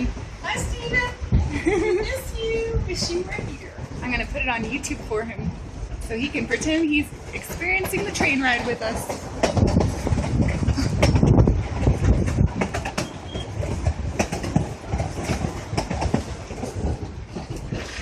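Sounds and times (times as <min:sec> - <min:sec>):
railroad car rumbling on track: 0:00.0 - 0:18.0
wheels and car body clacking: 0:06.3 - 0:18.0.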